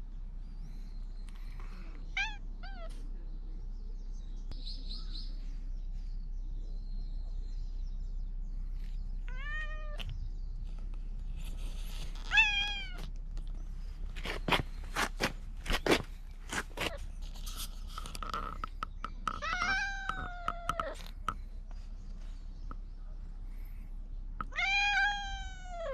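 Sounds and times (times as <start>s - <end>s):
faint bird chirping: 0.0s - 25.9s
cat meowing loudly: 9.3s - 10.0s, 12.2s - 13.1s, 19.4s - 21.0s, 24.5s - 25.9s.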